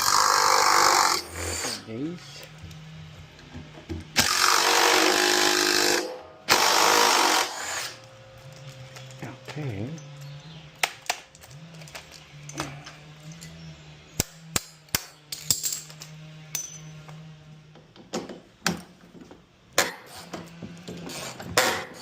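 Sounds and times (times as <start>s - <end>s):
hand tools clicking and clanking: 8.0s - 17.2s.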